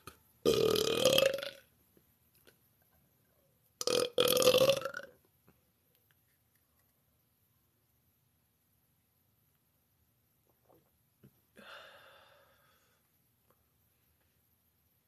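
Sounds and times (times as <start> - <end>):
woman belching: 0.5 - 1.6, 3.8 - 5.1.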